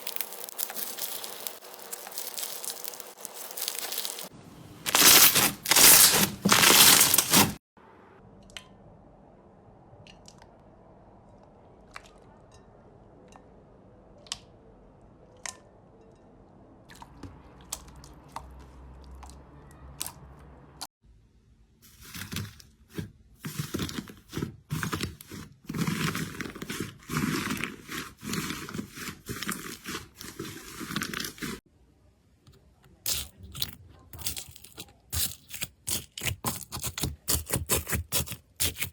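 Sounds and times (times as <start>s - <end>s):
slime crunching: 0.0s - 7.6s, 23.5s - 31.6s, 33.1s - 38.9s.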